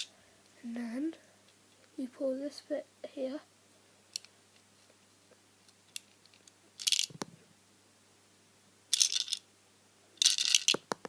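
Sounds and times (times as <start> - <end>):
plastic bricks clicking: 5.9 - 7.3, 8.9 - 9.4, 10.2 - 11.0
plastic parts clattering: 6.0 - 7.2, 8.9 - 9.4, 10.2 - 10.9.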